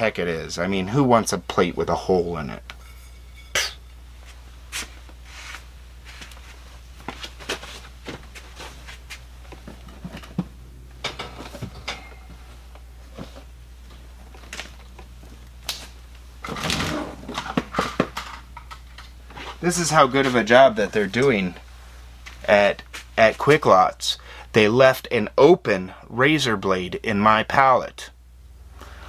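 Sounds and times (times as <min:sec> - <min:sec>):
rustling: 0:04.2 - 0:10.4.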